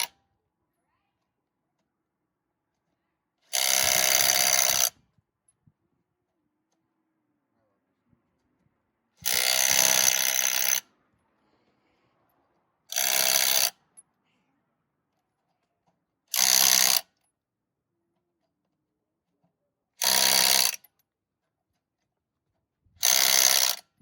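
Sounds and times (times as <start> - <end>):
impact wrench running: 3.5 - 4.9, 9.2 - 10.8, 12.9 - 13.8, 16.3 - 17.0, 20.0 - 20.8, 23.0 - 23.8.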